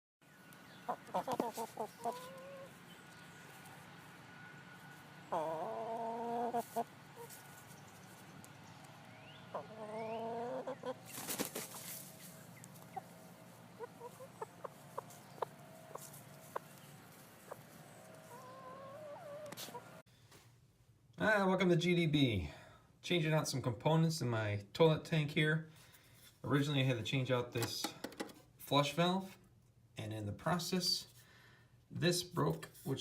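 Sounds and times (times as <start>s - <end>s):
chickens clucking: 0.6s - 4.2s, 4.8s - 20.0s.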